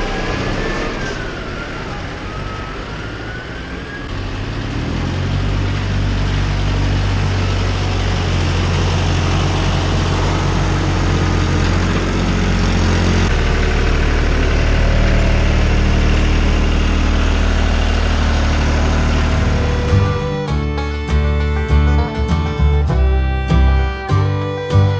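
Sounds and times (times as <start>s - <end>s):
diesel tractor engine: 19.0s - 24.9s
country music with guitar: 19.3s - 24.9s.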